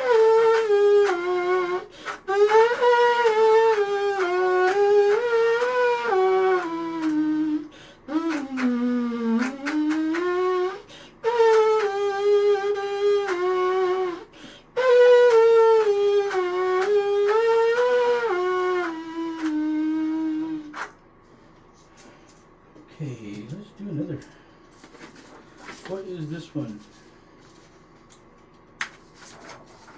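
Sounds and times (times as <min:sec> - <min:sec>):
trumpet melody: 0:00.0 - 0:21.0
player breathing: 0:07.7 - 0:08.1, 0:10.9 - 0:11.2, 0:14.3 - 0:14.7.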